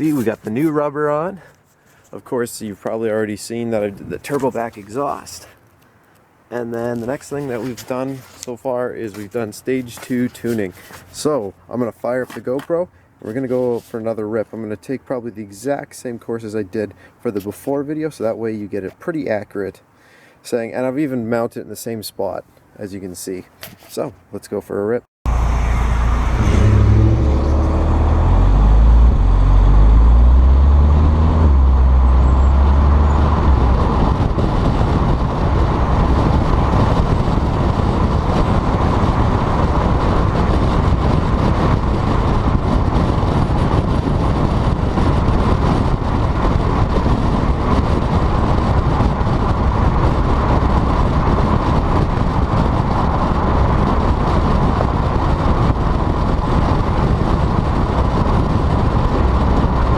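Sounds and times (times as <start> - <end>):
road and wind noise: 0.0 - 59.9
car engine accelerating: 25.3 - 36.9.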